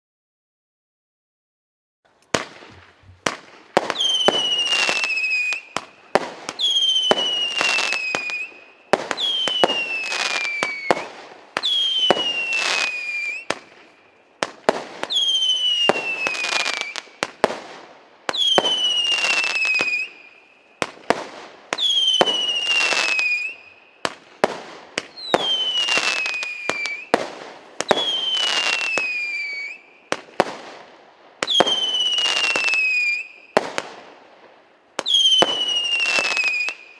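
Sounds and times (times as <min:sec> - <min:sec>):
firework pops: 0:02.1 - 0:05.0
firework crackles: 0:02.1 - 0:36.9
falling firework whistle: 0:02.3 - 0:14.1, 0:15.0 - 0:17.4, 0:18.3 - 0:21.1, 0:21.7 - 0:24.2, 0:25.0 - 0:30.3, 0:31.4 - 0:33.8, 0:35.0 - 0:36.9.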